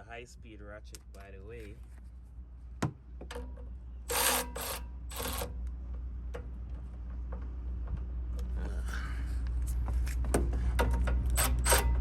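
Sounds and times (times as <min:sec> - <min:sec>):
cordless ratchet bursts: 0:04.1 - 0:05.5, 0:11.3 - 0:12.0.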